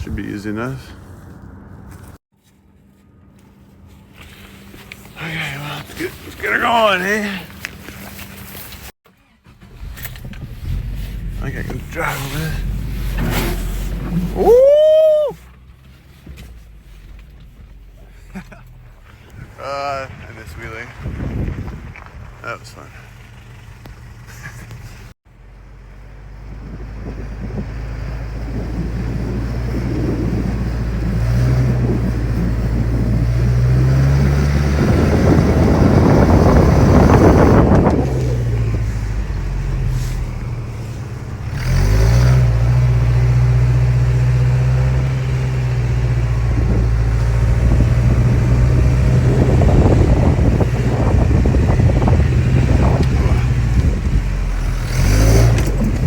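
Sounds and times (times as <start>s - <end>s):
truck engine revving under load: 9.0s - 14.7s, 26.1s - 56.0s.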